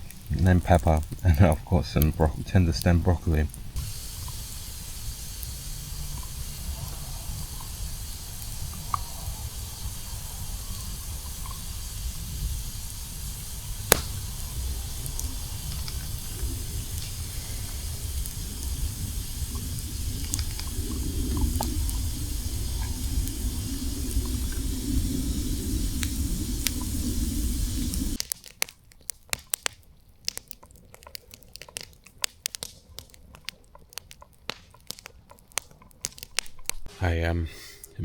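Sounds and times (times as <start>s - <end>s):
steady low rumble: 0.0s - 28.2s
campfire crackling and popping: 0.0s - 36.9s.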